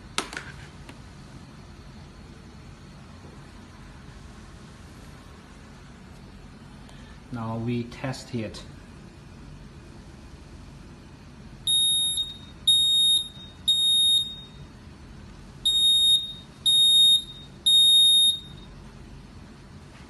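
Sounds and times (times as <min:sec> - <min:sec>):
alarm panel high-pitched beeps: 0:11.7 - 0:14.6, 0:15.6 - 0:18.7.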